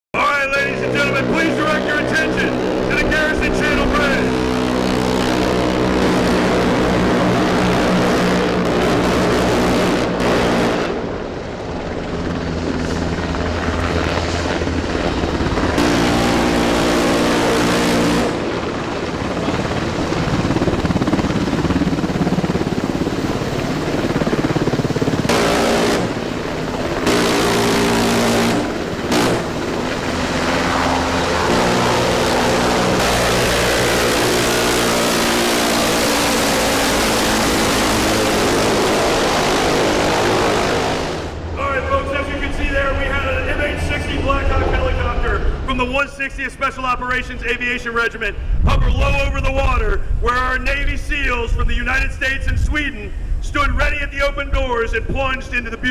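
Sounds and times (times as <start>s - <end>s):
helicopter rotors and turbines: 0.2s - 55.9s.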